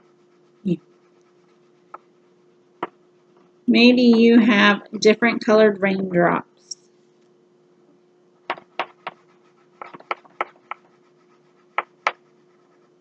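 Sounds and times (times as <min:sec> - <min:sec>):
faint steady hum: 0:00.0 - 0:13.0
crayon scratching on paper: 0:08.5 - 0:13.0.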